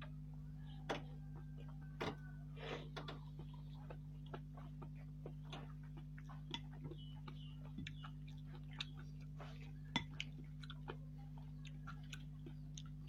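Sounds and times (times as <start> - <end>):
low electrical hum: 0.0 - 13.0
chewing and mouth clicks: 2.6 - 13.0.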